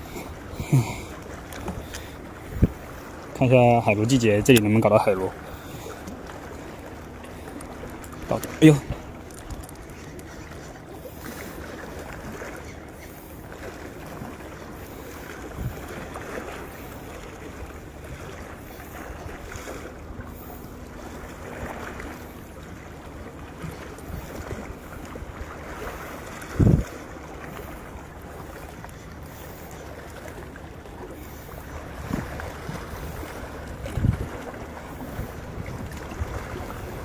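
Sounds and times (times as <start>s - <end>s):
wind buffeting microphone: 0.0s - 10.6s, 15.4s - 16.2s, 24.0s - 28.1s, 31.2s - 37.0s
sea waves washing: 0.0s - 37.0s.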